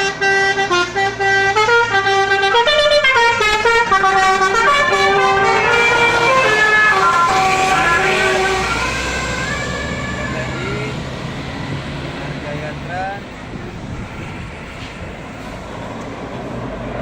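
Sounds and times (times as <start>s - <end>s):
musical air horns playing a tune: 0.0s - 11.0s.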